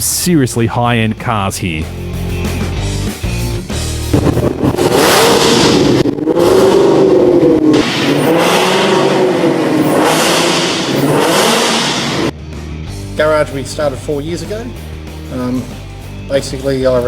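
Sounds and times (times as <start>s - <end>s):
car engine revving: 3.8s - 12.4s.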